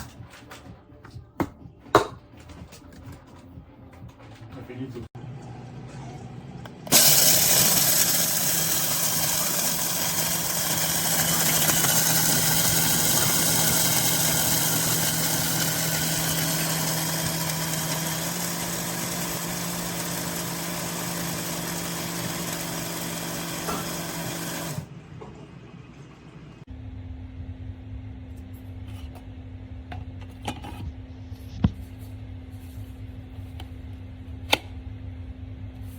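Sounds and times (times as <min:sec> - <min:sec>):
electric coffee grinder whirring: 0:06.7 - 0:24.9.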